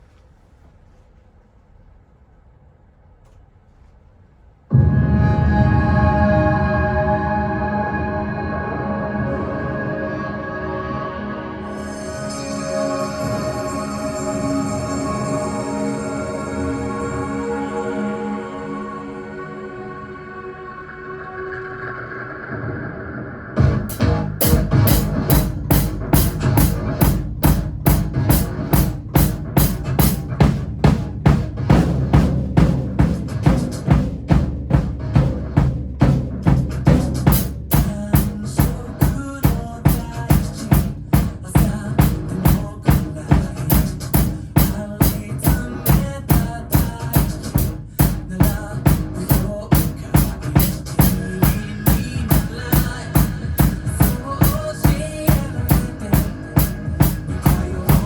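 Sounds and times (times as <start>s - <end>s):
drum kit playing a steady beat: 23.9s - 58.0s
pop backing track: 37.2s - 58.0s.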